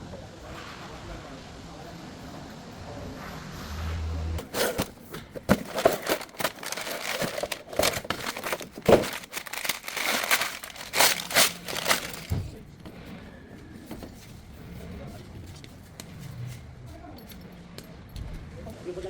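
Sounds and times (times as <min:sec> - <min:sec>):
crinkling rustling handling noise: 0:04.4 - 0:12.8.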